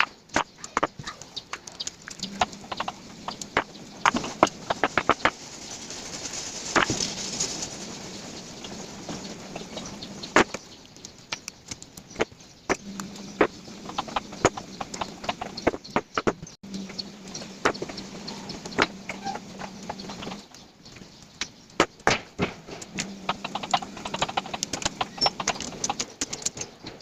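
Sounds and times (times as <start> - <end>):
cardboard rustle: 4.1 - 10.1.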